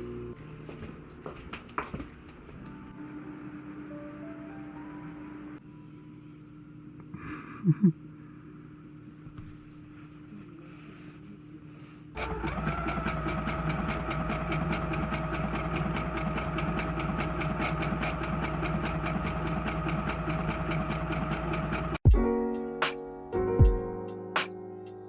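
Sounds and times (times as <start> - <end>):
small motor whining: 0.0 - 3.9, 12.2 - 22.0
piano music: 2.4 - 6.1, 22.1 - 25.0.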